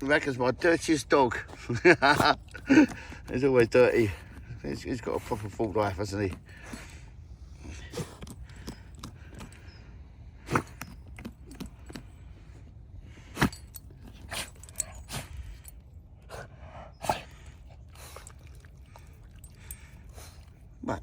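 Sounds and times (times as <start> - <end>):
dog digging in soil: 0.1 - 9.7, 13.2 - 15.7.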